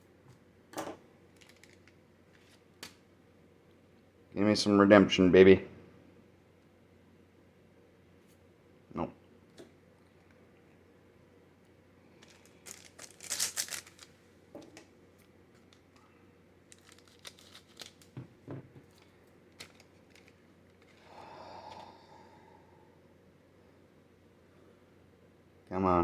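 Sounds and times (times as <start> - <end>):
wrapper and cards rustling: 1.3 - 2.6, 12.1 - 16.0, 16.7 - 18.2, 18.8 - 21.0
foil pack tearing open: 1.4 - 2.6, 12.2 - 14.2, 16.7 - 18.2, 19.5 - 21.0.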